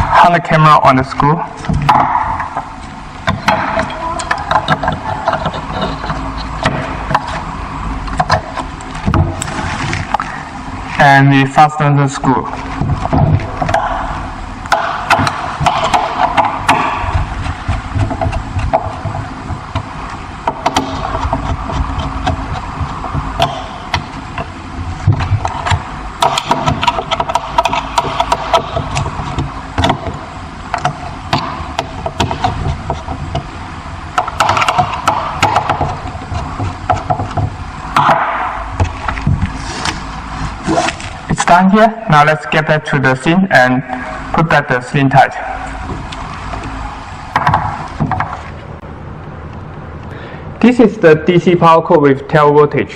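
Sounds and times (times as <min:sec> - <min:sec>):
steady mechanical hum: 0:00.0 - 0:52.9
scraping: 0:01.7 - 0:07.6
clicks and knocks: 0:47.3 - 0:48.6.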